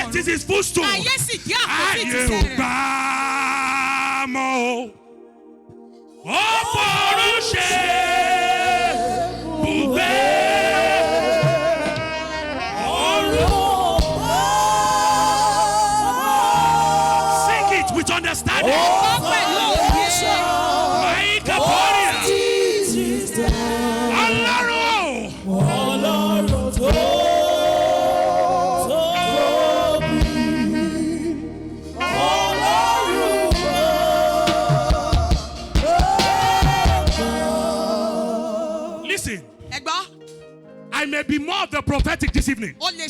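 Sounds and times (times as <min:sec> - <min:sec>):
worship singing: 0:00.0 - 0:41.7
keyboard accompaniment: 0:00.0 - 0:43.0
backing instruments: 0:06.4 - 0:40.3.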